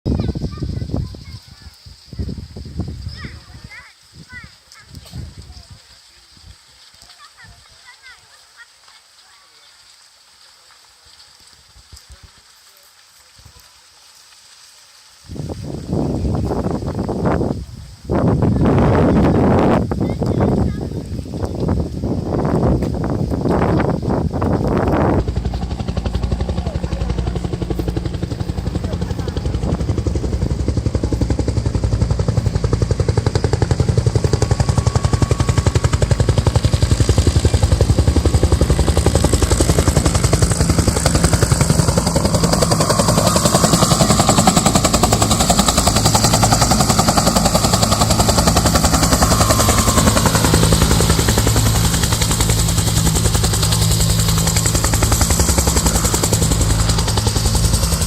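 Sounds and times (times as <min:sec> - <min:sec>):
helicopter rotor blades chopping: 0:18.2 - 0:58.0
turbine drone: 0:21.7 - 0:58.0.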